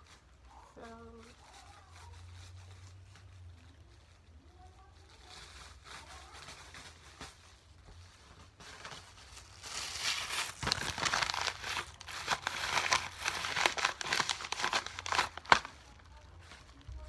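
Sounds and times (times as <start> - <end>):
plastic bags crinkling: 0.0 - 17.0
sharp crackle: 8.7 - 17.0.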